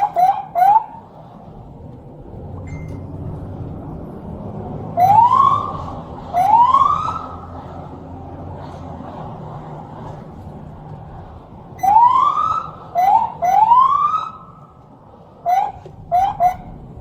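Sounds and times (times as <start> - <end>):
police siren whooping: 0.0 - 1.2, 4.6 - 10.1, 11.8 - 14.8, 15.4 - 16.9
road noise: 0.0 - 17.0.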